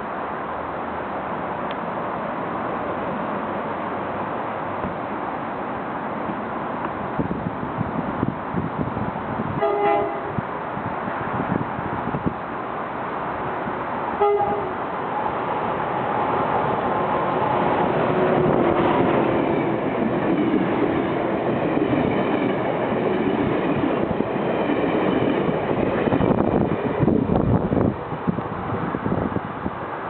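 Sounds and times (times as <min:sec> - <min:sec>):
train wheels rushing on rails: 0:00.0 - 0:30.0
train horn toot: 0:09.6 - 0:10.4, 0:14.2 - 0:14.8.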